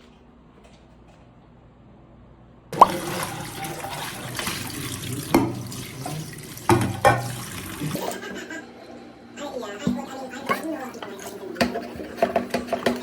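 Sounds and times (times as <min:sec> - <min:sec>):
tap water running into sink: 0:02.8 - 0:08.1.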